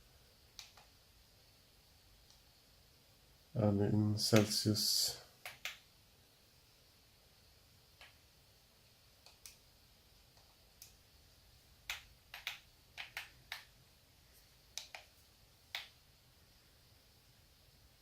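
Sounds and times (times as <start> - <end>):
faint steady hiss: 0.0 - 18.0
fingers tapping device keys: 11.8 - 13.7.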